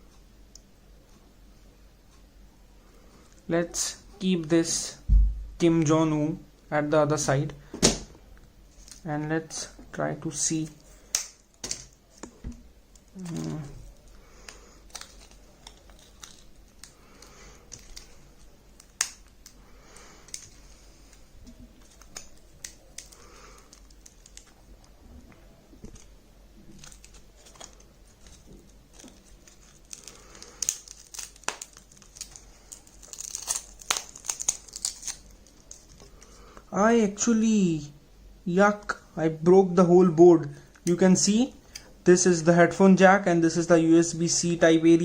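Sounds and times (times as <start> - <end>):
small clicks scrapes and crackles: 11.8 - 24.7, 26.7 - 36.7.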